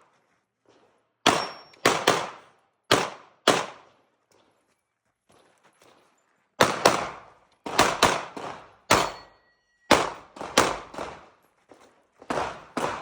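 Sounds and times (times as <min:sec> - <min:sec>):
pistol shots with echo: 0:01.2 - 0:03.9, 0:06.6 - 0:11.3, 0:12.3 - 0:13.0.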